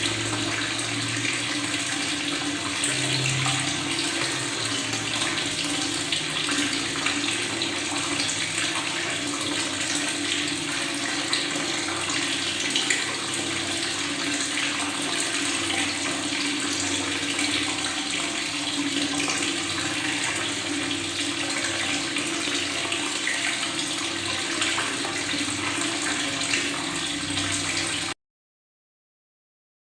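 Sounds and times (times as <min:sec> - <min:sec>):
tap water running and gurgling: 0:00.0 - 0:28.2.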